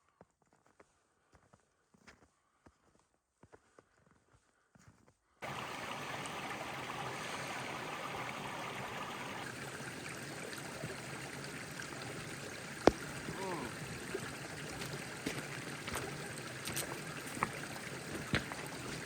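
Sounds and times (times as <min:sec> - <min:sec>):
faint footsteps: 0:00.6 - 0:19.0
creek water rushing: 0:05.4 - 0:19.0.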